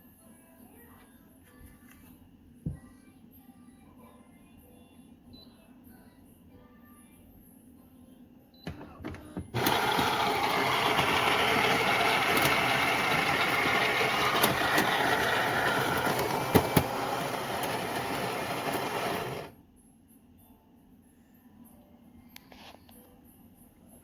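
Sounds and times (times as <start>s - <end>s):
clicks: 8.7s - 19.5s
espresso machine running: 9.5s - 19.5s.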